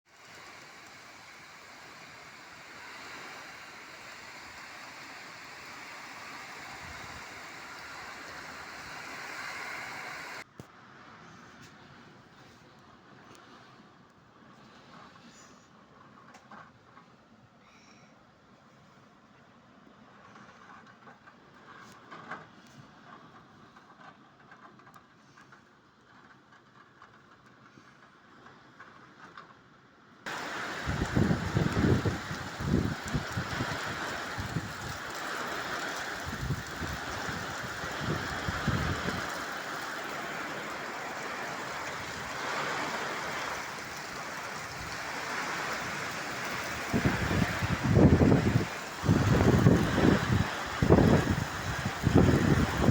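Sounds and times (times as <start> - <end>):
strong wind with rain: 0.1 - 16.7, 19.8 - 52.9
rain drop ticks: 30.3 - 52.9
wind buffeting microphone: 30.3 - 52.9.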